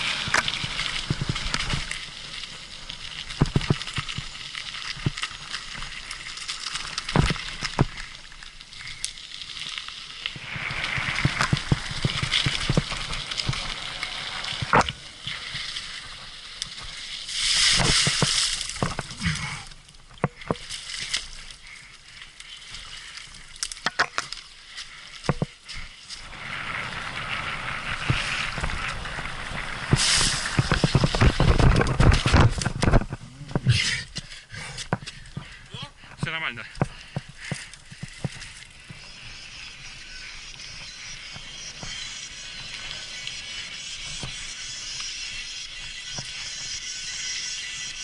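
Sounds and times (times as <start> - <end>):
bike clicks and rattles: 0.0 - 19.4, 20.0 - 48.0
bike tyres rolling on dirt: 0.0 - 48.0
hissing rush: 26.2 - 30.8.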